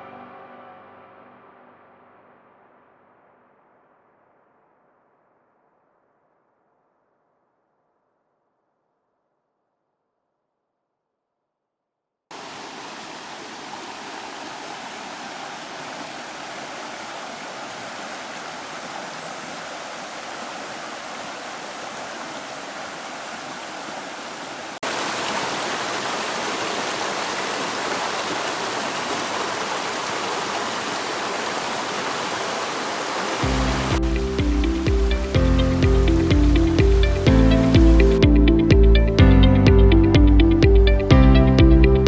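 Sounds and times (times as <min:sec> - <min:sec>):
rushing water: 0:12.3 - 0:38.8.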